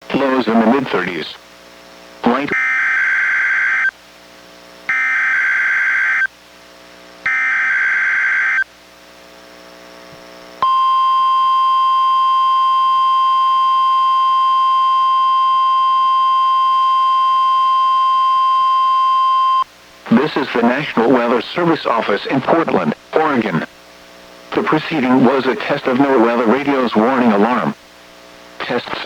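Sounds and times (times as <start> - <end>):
steady warning alarm tone: 2.5 - 3.9, 4.9 - 6.3, 7.2 - 8.7, 10.6 - 19.6.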